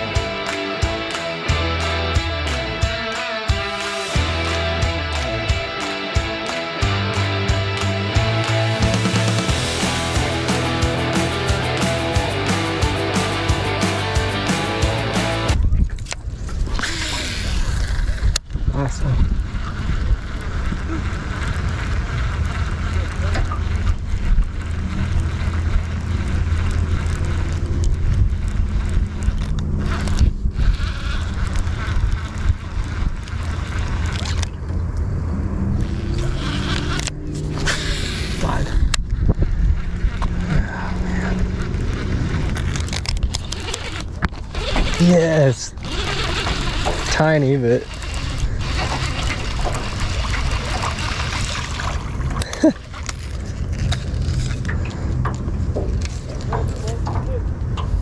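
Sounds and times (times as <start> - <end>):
strong wind buffeting microphone: 15.5 - 58.0
water splashing and trickling: 40.4 - 58.0.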